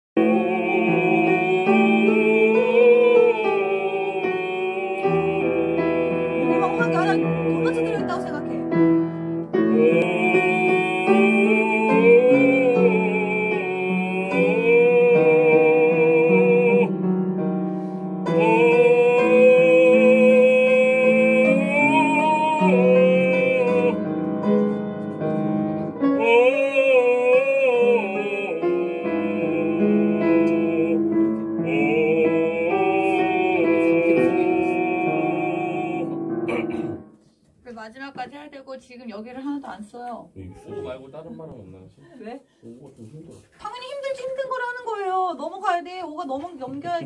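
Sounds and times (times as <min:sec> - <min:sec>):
operatic voice singing: 0:00.2 - 0:08.8, 0:09.6 - 0:17.1, 0:18.2 - 0:24.8, 0:26.0 - 0:37.0
piano accompaniment: 0:00.2 - 0:37.6.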